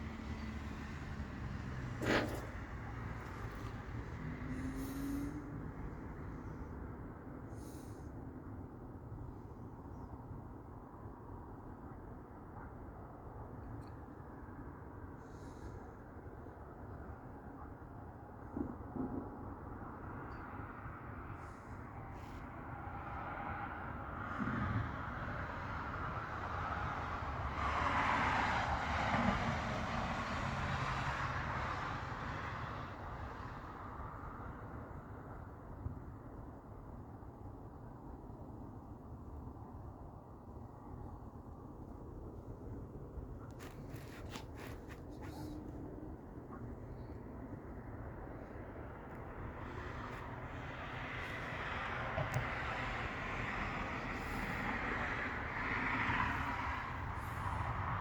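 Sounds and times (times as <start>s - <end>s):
approaching vehicle: 0.0s - 6.9s, 47.2s - 58.0s
vehicle passing with low rumble: 0.0s - 8.0s, 20.7s - 36.7s, 40.4s - 58.0s.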